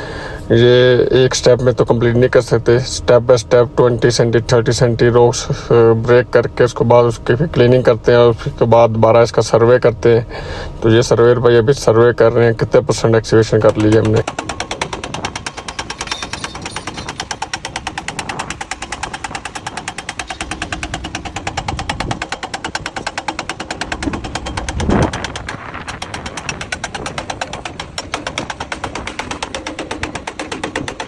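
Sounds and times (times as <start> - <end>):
hydraulic rock breaker hammering: 13.3 - 31.0.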